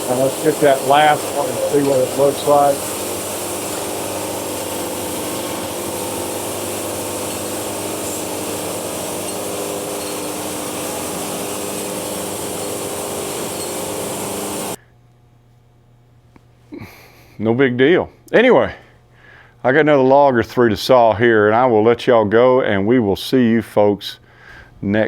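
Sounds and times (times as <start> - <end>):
band sawmill sawing a log: 0.0 - 14.8.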